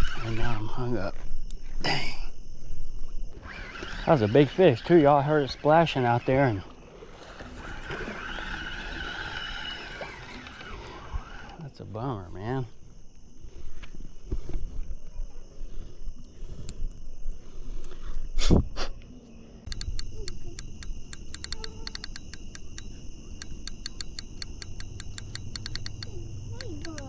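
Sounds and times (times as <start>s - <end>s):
crickets trilling: 0.0s - 27.0s
rapid irregular clicking: 19.7s - 27.0s.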